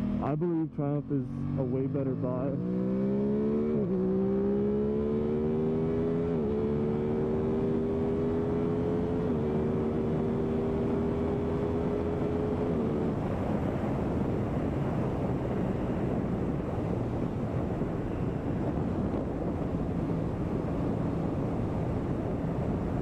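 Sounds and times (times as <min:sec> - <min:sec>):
motorcycle engine accelerating: 0:00.0 - 0:00.4, 0:01.0 - 0:23.0
wind rushing over microphone: 0:05.8 - 0:23.0.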